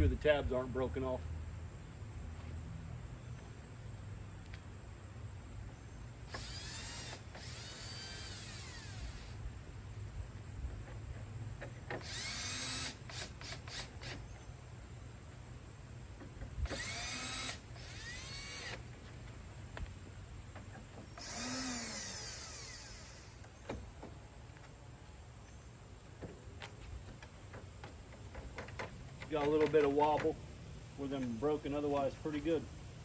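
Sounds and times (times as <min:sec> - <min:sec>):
power drill whirring: 0:06.3 - 0:09.4, 0:11.9 - 0:14.2, 0:16.6 - 0:19.0, 0:21.1 - 0:23.7.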